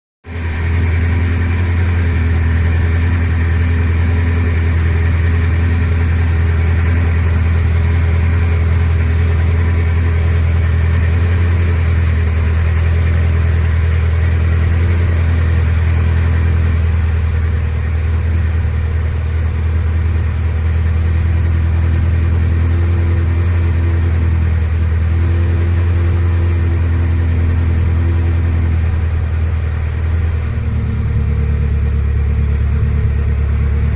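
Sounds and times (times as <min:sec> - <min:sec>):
car engine idling: 0:00.2 - 0:33.9.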